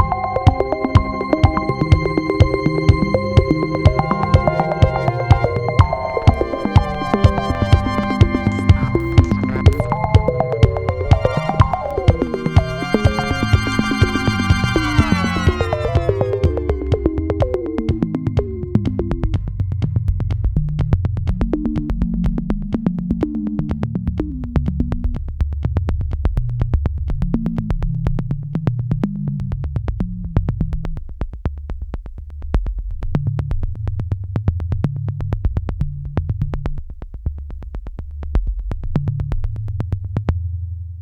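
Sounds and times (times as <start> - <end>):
steady clicking beat: 0.0 - 17.2
synthesizer bass line: 1.6 - 17.2.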